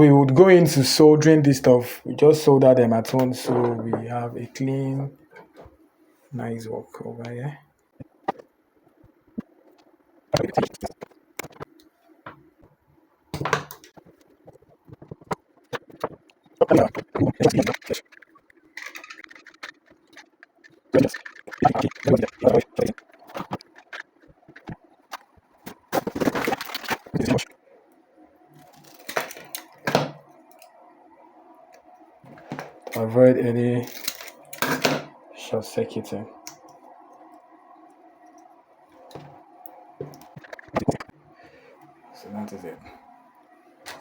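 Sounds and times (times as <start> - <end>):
faint steady hum: 0.0 - 44.0
rapid crackling and clicking: 7.2 - 11.9, 12.6 - 27.6, 36.4 - 41.2.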